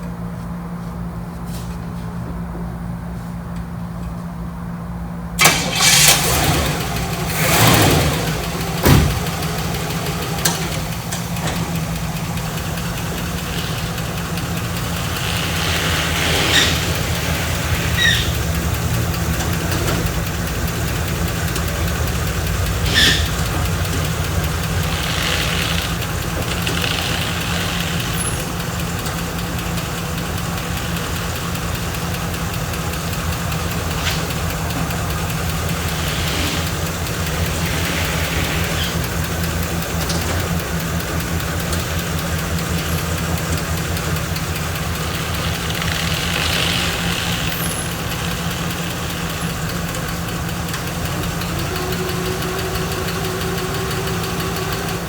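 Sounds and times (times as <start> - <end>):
car engine idling: 0.0 - 55.0.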